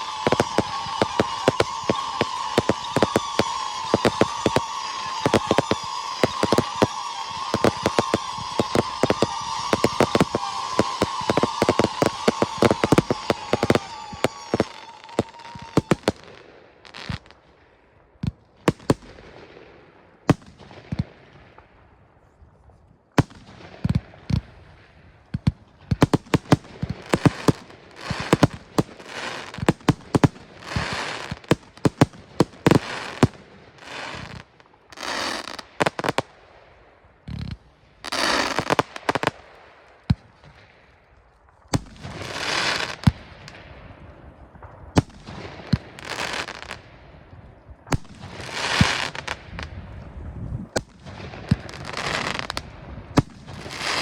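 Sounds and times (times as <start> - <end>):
firework shells bursting: 0.0 - 16.4
firework whistle: 0.0 - 17.3, 27.0 - 36.2, 38.0 - 39.5, 51.5 - 54.0
firework crackling: 0.0 - 17.4, 25.9 - 36.5, 37.2 - 47.0, 47.8 - 54.0.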